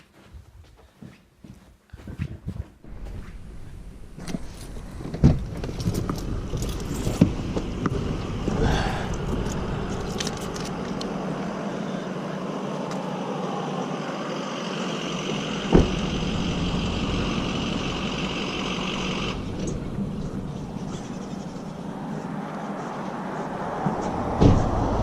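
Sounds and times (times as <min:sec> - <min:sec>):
road vehicle running: 0:02.8 - 0:25.0.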